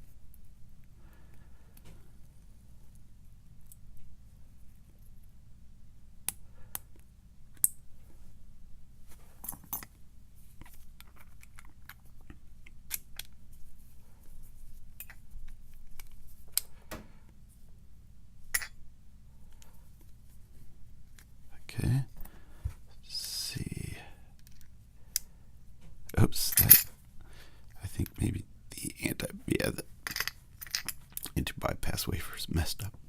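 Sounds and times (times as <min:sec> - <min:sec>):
small metal parts clicking: 0:30.0 - 0:31.3.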